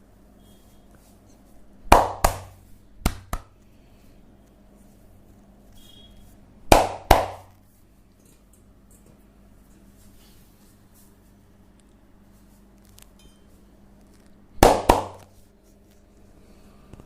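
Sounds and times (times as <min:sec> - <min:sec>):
hand slaps on the body: 0:01.9 - 0:03.5, 0:06.7 - 0:07.5.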